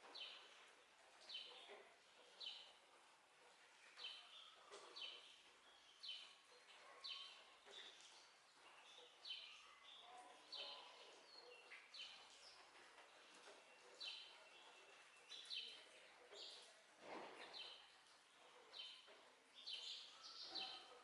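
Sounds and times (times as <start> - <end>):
birds chirping: 3.8 - 21.0.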